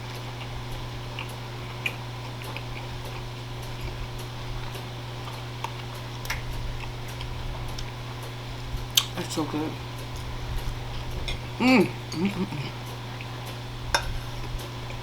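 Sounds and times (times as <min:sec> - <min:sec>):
steady low hum: 0:00.0 - 0:15.0
chewing mouth clicks: 0:00.1 - 0:08.0, 0:08.8 - 0:09.2.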